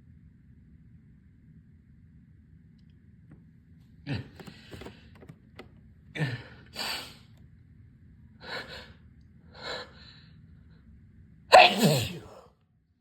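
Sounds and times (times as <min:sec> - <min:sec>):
person gasping breathily: 0:06.2 - 0:07.2, 0:11.6 - 0:12.4
loud sneeze: 0:11.5 - 0:12.4.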